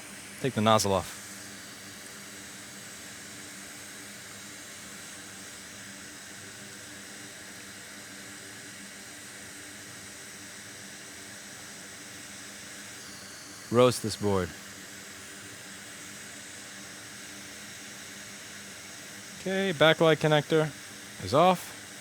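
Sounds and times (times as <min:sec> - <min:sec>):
hot air station hissing: 0:00.0 - 0:22.0
faint hum: 0:13.0 - 0:14.6, 0:19.4 - 0:21.8.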